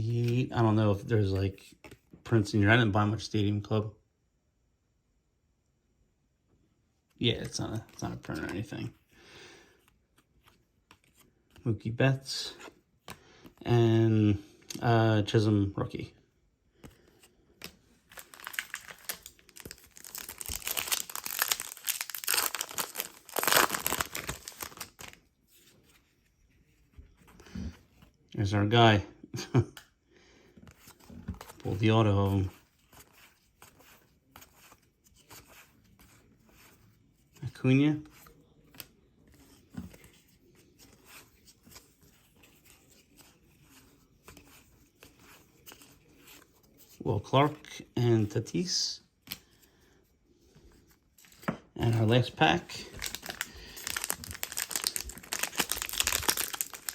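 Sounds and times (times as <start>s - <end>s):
trading cards rustling: 7.3s - 9.0s, 16.8s - 28.0s, 30.6s - 47.6s, 50.5s - 56.9s
plastic wrapper crinkling: 17.7s - 25.2s, 51.9s - 56.9s.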